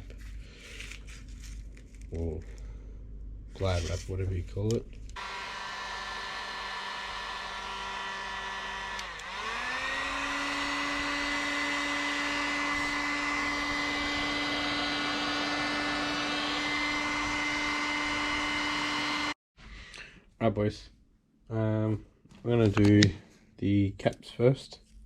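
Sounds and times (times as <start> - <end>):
heat gun motor hum and whine: 5.2 - 19.4.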